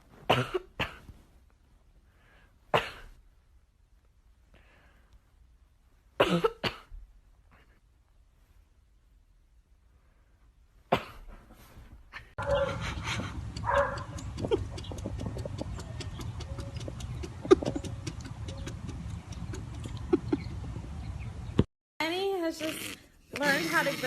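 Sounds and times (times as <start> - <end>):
background noise: 0.0 - 24.0
dog vocalizing: 12.4 - 20.4
faint regular ticking: 13.1 - 20.1.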